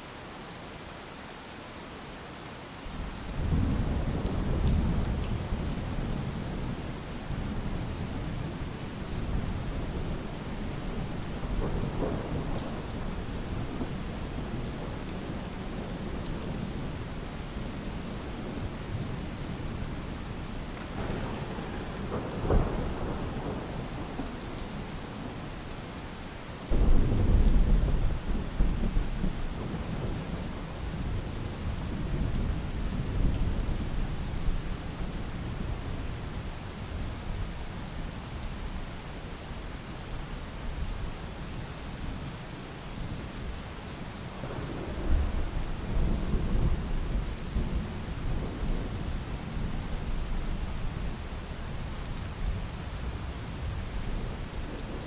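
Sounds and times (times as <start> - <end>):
heavy rain: 0.0 - 55.0
low thunder rumble: 7.4 - 17.2, 20.7 - 25.5, 26.7 - 34.6, 44.4 - 50.6
thunder crack: 20.8 - 24.3.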